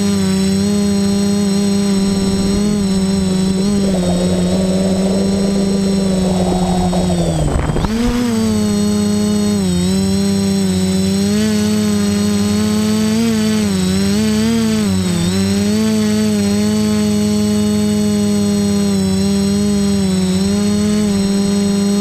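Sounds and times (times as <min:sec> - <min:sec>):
drone motors whining: 0:00.0 - 0:15.6.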